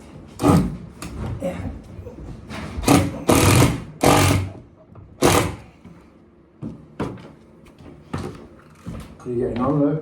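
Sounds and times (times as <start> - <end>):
power drill running: 2.9 - 4.5, 5.2 - 5.6.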